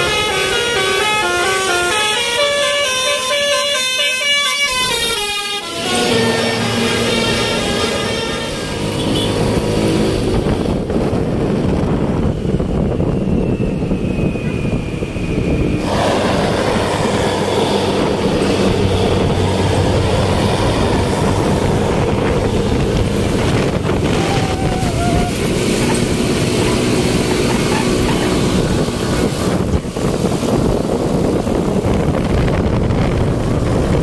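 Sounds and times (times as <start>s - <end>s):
heavy vehicle engine running: 0.0s - 34.0s
road noise: 0.0s - 34.0s.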